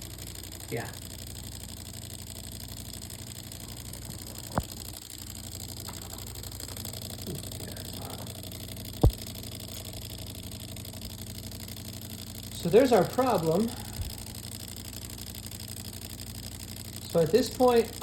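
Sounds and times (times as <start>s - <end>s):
espresso machine pump humming: 0.0s - 18.0s
sharp clicks: 8.8s - 11.2s.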